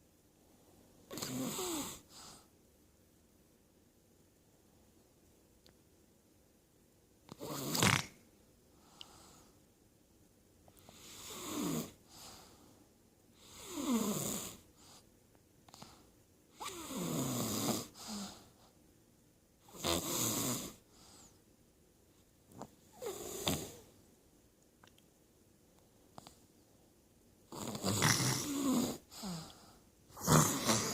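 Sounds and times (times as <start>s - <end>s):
girl snoring: 1.1s - 2.1s, 7.3s - 8.2s, 10.9s - 12.0s, 13.4s - 14.6s, 16.6s - 18.4s, 19.7s - 20.8s, 22.9s - 23.9s, 27.5s - 30.9s.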